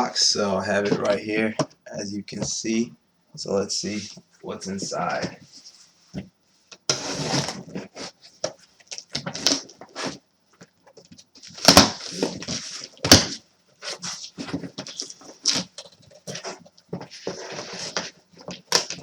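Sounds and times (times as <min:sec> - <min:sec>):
cardboard rustling and tearing: 0:06.9 - 0:08.2, 0:08.9 - 0:10.2, 0:11.4 - 0:19.0.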